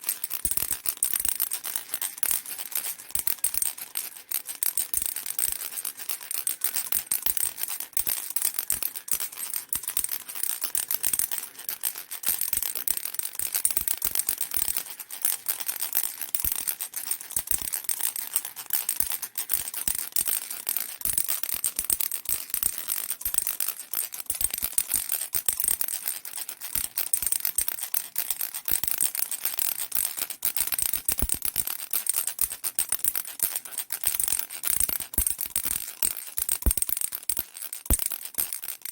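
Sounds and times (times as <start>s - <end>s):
baby rattle shaken: 18.3s - 38.9s.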